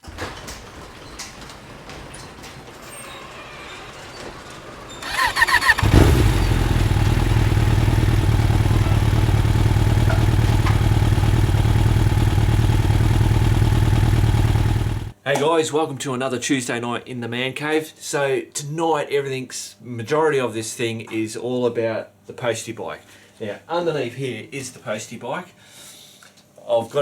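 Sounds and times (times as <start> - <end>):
motorcycle engine cranking: 4.0 - 15.2
motorcycle engine running: 5.0 - 15.2.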